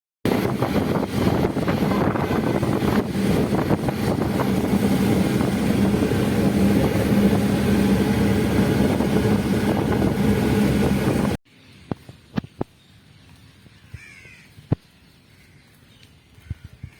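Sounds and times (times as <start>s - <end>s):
loud vehicle engine noise: 0.3s - 11.4s.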